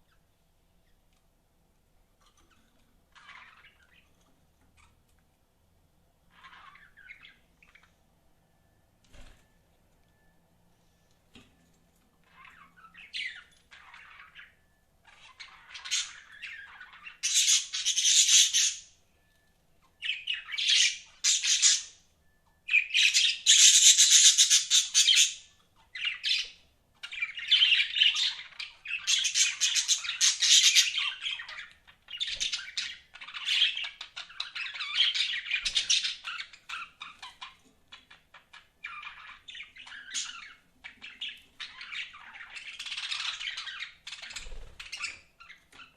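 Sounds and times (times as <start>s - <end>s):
budgerigars chattering and squawking: 12.2s - 19.0s, 20.0s - 22.0s, 22.8s - 45.9s.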